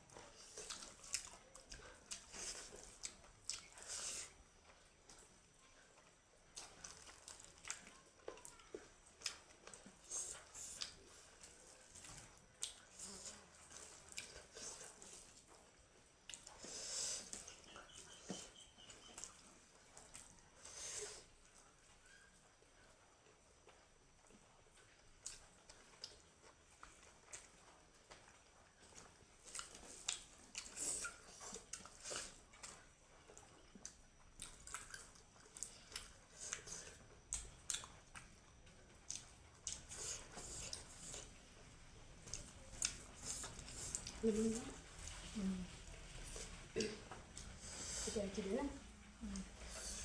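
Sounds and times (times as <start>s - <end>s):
wet chewing smacks: 0.1s - 22.3s, 23.6s - 48.2s
soft breaths: 12.9s - 18.7s, 42.8s - 50.0s.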